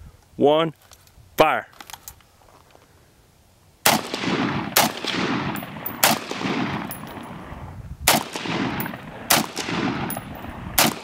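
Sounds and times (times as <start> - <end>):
gunshots with echo: 3.9 - 7.4, 8.1 - 11.0.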